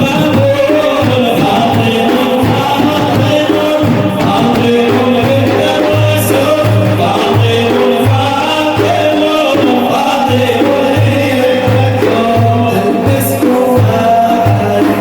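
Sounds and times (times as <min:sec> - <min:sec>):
frame drums beating: 0:00.0 - 0:15.0
group singing devotional praise: 0:00.0 - 0:15.0.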